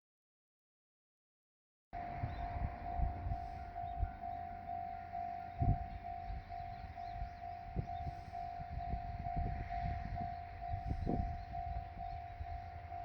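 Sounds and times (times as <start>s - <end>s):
level crossing alarm ringing: 2.0s - 13.0s
wind buffeting microphone: 2.0s - 13.0s.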